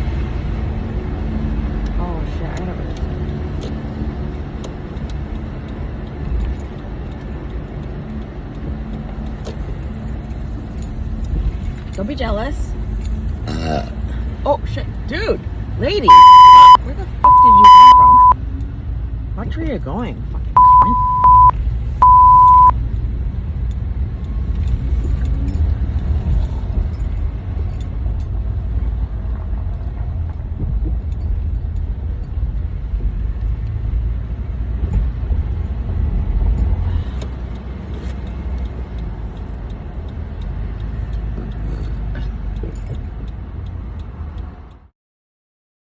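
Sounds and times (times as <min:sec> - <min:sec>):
car engine rumble: 0:00.0 - 0:44.9
road noise: 0:00.0 - 0:44.9
single-pitch bleep: 0:16.1 - 0:18.4, 0:20.6 - 0:22.7.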